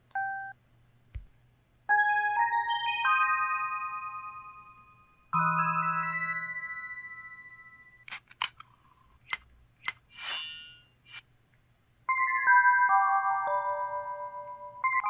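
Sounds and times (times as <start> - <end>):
sharp clicks: 8.1 - 10.2.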